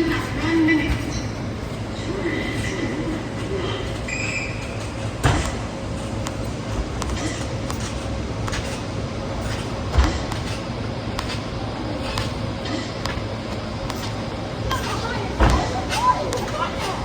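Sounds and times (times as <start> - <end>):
steady background noise: 0.0 - 17.0.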